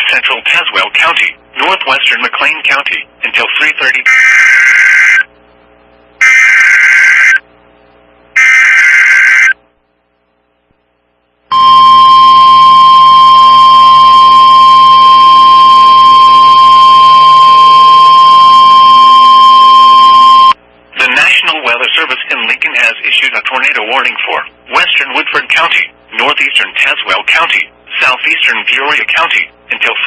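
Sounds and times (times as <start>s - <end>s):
loud warning alarm tone: 4.1s - 5.3s, 6.2s - 7.4s, 8.4s - 9.6s, 11.5s - 20.6s.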